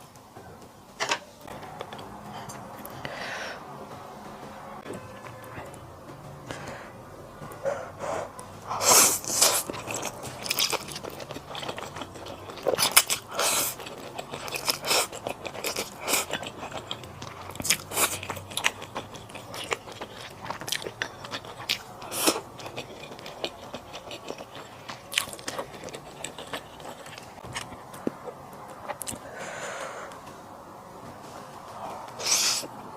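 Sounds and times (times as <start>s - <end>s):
person chewing and biting food: 8.8s - 29.2s.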